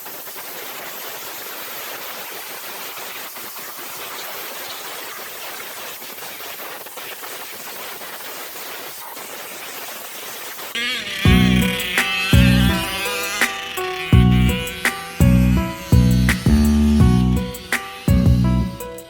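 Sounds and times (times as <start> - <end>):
steady static hiss: 10.4 - 19.0.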